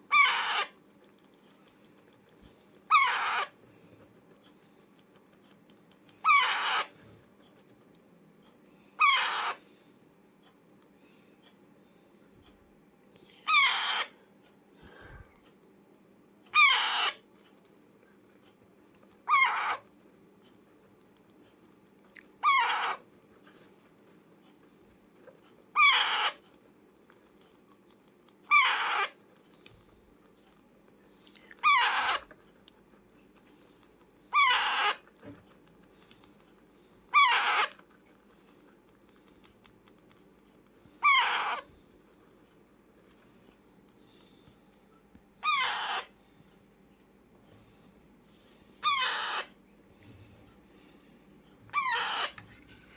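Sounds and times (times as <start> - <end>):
parakeet screechy calls: 0.1 - 0.8, 2.9 - 3.5, 6.2 - 6.9, 9.0 - 9.6, 13.4 - 14.2, 16.5 - 17.2, 19.2 - 19.8, 22.4 - 23.0, 25.7 - 26.4, 28.5 - 29.2, 31.6 - 32.3, 34.3 - 35.0, 37.1 - 37.8, 41.0 - 41.7, 45.4 - 46.1, 48.8 - 49.6, 51.7 - 52.4.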